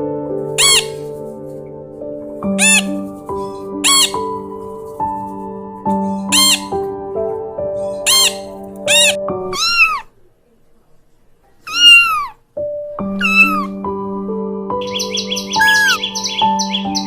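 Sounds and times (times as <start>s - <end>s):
background music sustained notes: 0.0s - 9.9s, 12.4s - 17.0s
animal crying: 0.6s - 1.0s, 2.6s - 4.4s, 6.0s - 6.8s, 7.8s - 10.2s, 11.6s - 12.4s, 13.1s - 13.8s, 15.1s - 16.3s.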